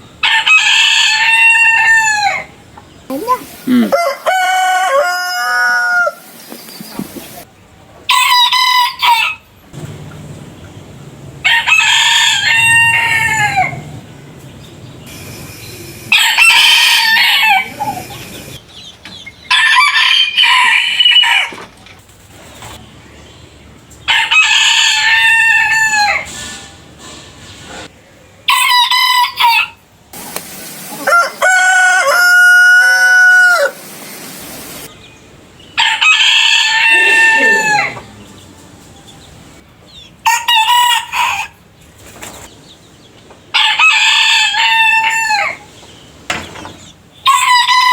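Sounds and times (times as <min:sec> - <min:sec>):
roosters crowing: 0:00.1 - 0:09.8, 0:11.4 - 0:14.2, 0:15.1 - 0:18.6, 0:19.2 - 0:21.7, 0:24.0 - 0:26.5, 0:28.4 - 0:29.9, 0:30.6 - 0:34.9, 0:35.7 - 0:42.4, 0:43.5 - 0:46.1, 0:46.7 - 0:47.9
background hiss: 0:03.0 - 0:04.2, 0:06.0 - 0:07.5, 0:30.1 - 0:31.4, 0:33.5 - 0:35.2.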